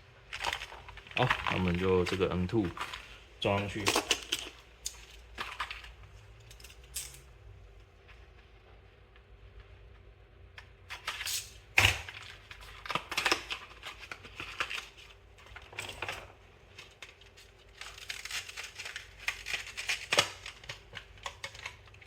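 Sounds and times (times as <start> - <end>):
packaging rustling: 0.2 - 6.2, 10.9 - 22.0.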